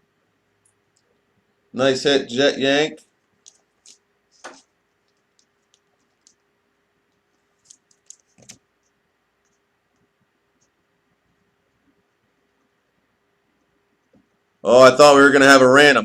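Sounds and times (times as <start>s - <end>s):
trading cards clicking and ticking: 7.2s - 9.6s.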